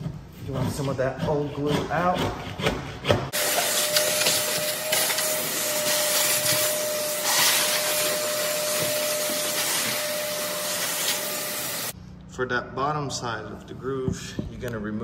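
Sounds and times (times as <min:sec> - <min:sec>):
electric machine whining hiss: 0:03.4 - 0:12.0.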